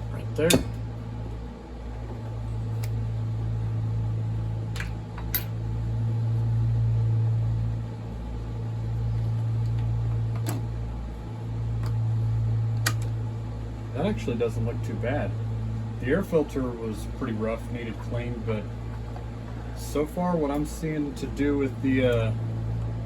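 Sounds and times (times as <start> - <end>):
lawn mower engine running: 8.0 - 23.0.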